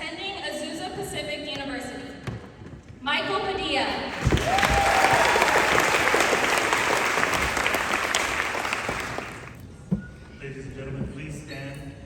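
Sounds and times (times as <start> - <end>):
audience cheering: 4.1 - 9.6
audience clapping: 4.1 - 9.6.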